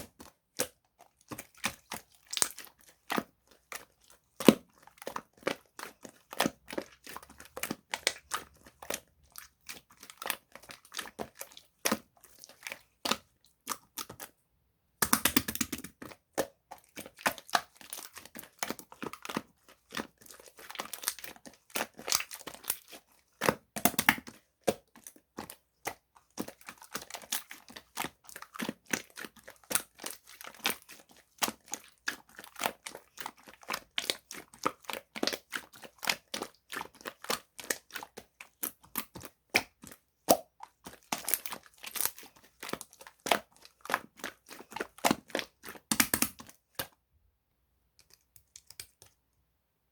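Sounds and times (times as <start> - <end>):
slime crackling and popping: 15.0 - 25.6, 26.4 - 46.9.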